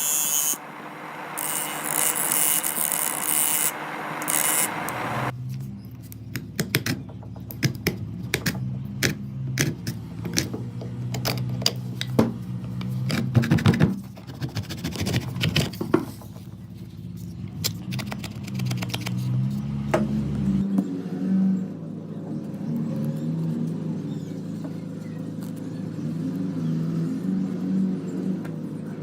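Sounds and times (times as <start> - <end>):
low steady hum: 0.0 - 5.4.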